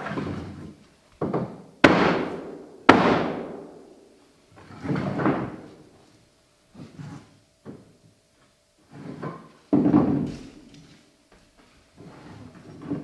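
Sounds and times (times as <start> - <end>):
wooden boards knocking and thudding: 1.2 - 4.0, 5.0 - 5.7
loud sharp bangs: 1.8 - 4.2.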